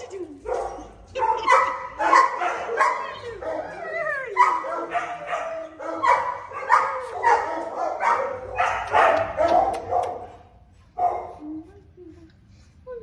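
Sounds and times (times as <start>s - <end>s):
puppy barking: 0.5s - 11.4s.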